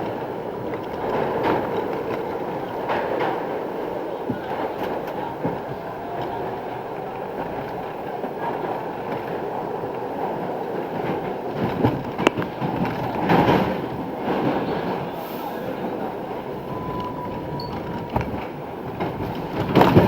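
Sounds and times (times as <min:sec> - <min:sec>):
clacks over rail joints: 0:00.0 - 0:20.0
subway wheels rumbling on rail: 0:00.0 - 0:20.0.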